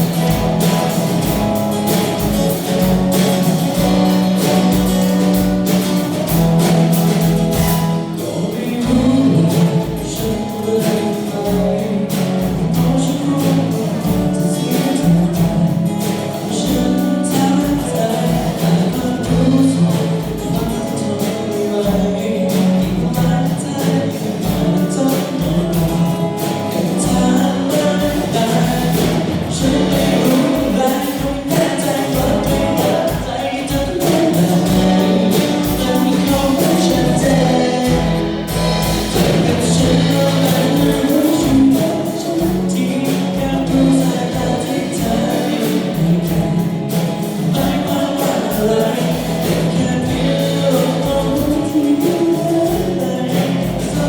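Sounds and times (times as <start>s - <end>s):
band playing a song with vocals: 0.0s - 54.0s.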